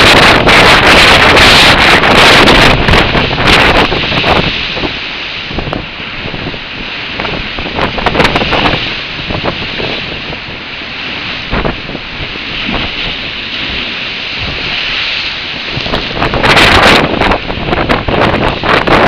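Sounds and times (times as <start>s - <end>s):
storm surf: 0.0s - 19.0s
wind buffeting microphone: 0.0s - 19.0s
scattered crackles: 11.0s - 19.0s.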